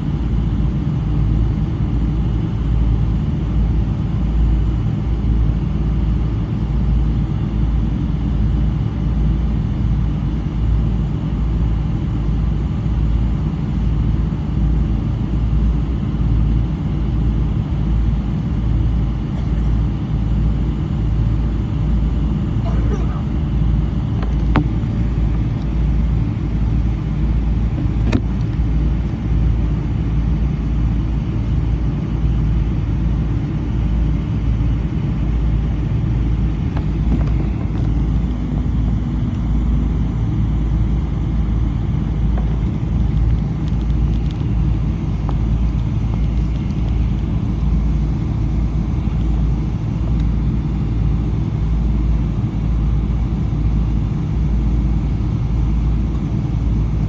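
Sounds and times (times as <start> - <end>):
airplane cabin rumble: 0.0 - 57.0
faint clicks: 42.4 - 44.5.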